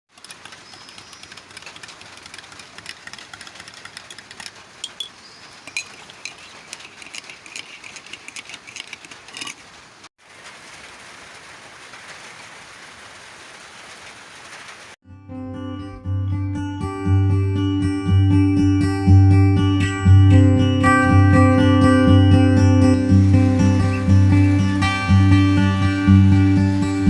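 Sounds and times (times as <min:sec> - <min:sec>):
steady rain: 0:00.1 - 0:07.4, 0:08.6 - 0:15.0, 0:22.9 - 0:27.0.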